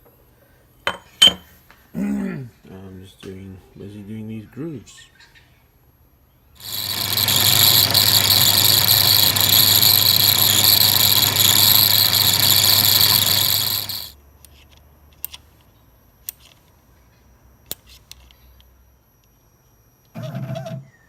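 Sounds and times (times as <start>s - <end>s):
power cutting tool whining: 6.6s - 14.1s.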